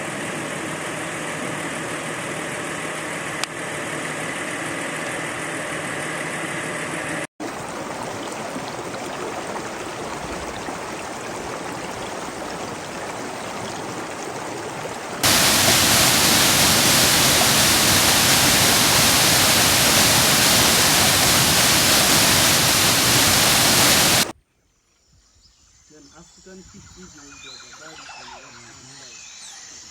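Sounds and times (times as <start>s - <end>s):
droning hum: 15.2s - 24.3s
steady rushing noise: 15.2s - 24.3s.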